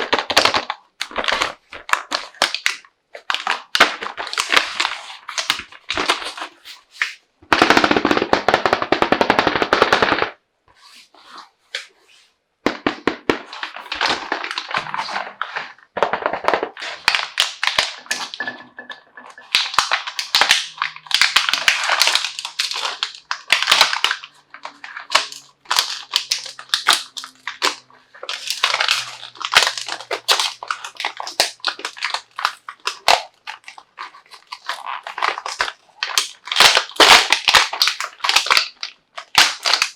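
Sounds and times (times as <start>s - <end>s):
plastic wrap crinkling: 0.0s - 39.9s
plastic pieces clicking: 16.0s - 39.9s
rapid rasping of wrap tearing: 19.5s - 39.9s.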